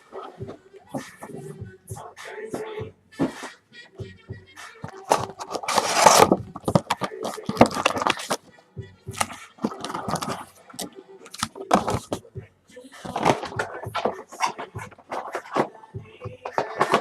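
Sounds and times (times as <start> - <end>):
sticker packets being torn open: 4.9 - 8.4.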